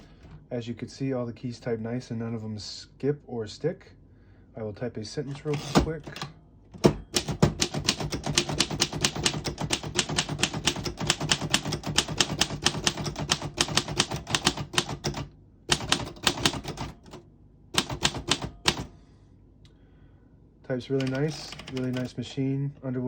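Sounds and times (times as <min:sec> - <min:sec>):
typewriter key strikes: 0:05.5 - 0:17.2, 0:17.8 - 0:18.9.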